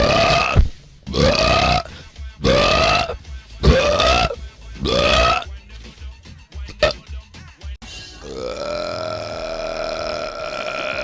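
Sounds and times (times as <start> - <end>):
person belching: 0.0 - 5.5, 6.7 - 7.0, 8.2 - 11.0.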